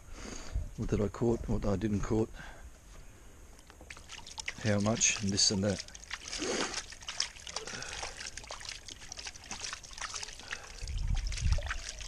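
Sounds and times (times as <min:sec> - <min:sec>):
water trickling and pouring: 0:03.8 - 0:12.0.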